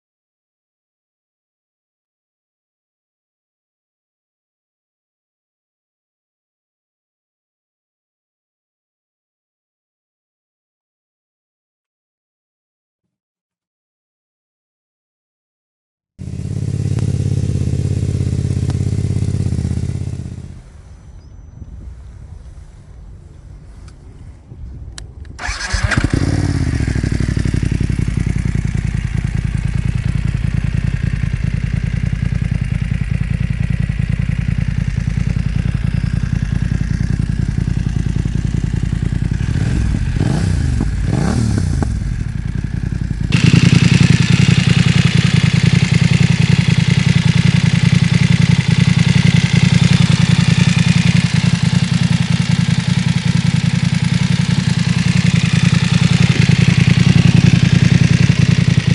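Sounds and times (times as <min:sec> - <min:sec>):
motorcycle engine idling: 0:16.2 - 0:22.6, 0:25.4 - 0:58.9
engine throttle blips: 0:16.2 - 0:58.9.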